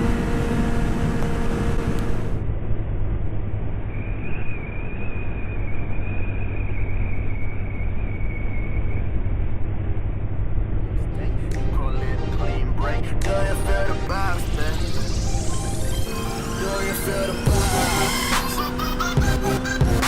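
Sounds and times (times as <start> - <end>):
motorcycle engine running: 0.0 - 2.4, 15.1 - 20.0
thin wavering whine: 0.0 - 13.0, 13.7 - 20.0
steady low hum: 0.0 - 20.0.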